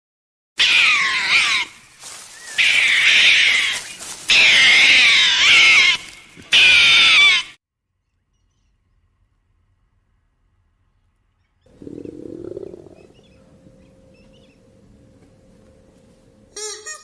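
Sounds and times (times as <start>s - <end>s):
animal calling high-pitched: 0.6s - 1.8s, 2.4s - 7.6s, 11.7s - 14.7s.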